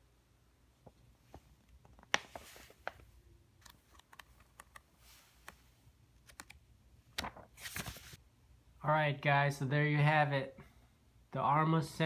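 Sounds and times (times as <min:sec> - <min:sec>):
paper pages turning: 0:01.9 - 0:05.6, 0:06.2 - 0:06.6, 0:07.2 - 0:08.2.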